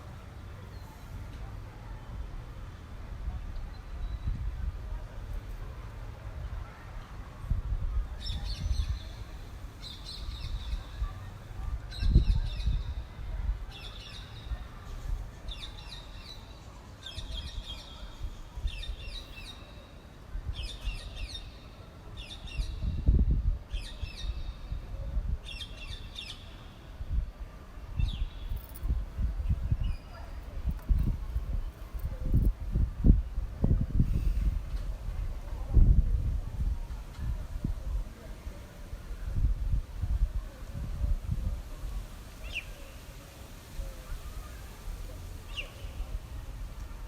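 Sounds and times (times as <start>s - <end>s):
wind buffeting microphone: 2.1s - 16.3s, 22.5s - 26.3s, 26.9s - 42.7s.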